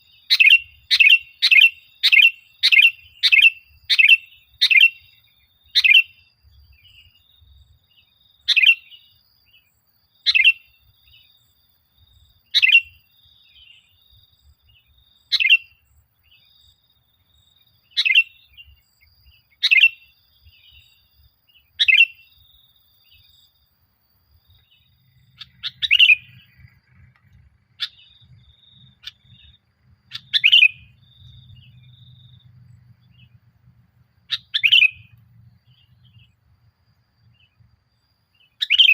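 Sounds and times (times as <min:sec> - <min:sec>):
bulbul calling: 0:00.0 - 0:07.2, 0:08.0 - 0:09.6, 0:10.2 - 0:11.3, 0:12.4 - 0:14.0, 0:14.7 - 0:16.6, 0:17.8 - 0:22.5, 0:24.5 - 0:36.5, 0:37.1 - 0:38.9
faint high chirping: 0:00.0 - 0:38.9.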